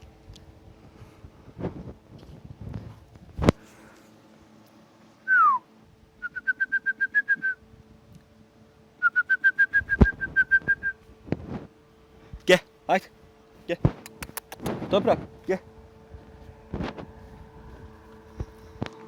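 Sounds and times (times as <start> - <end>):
man whistling for dogs: 5.3 - 5.6, 6.2 - 7.6, 9.0 - 11.0.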